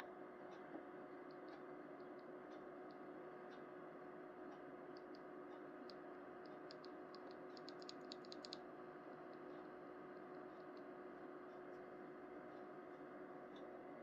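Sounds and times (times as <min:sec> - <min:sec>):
faint steady hum: 0:00.0 - 0:14.0
mechanical keyboard keys clicking: 0:06.7 - 0:08.6.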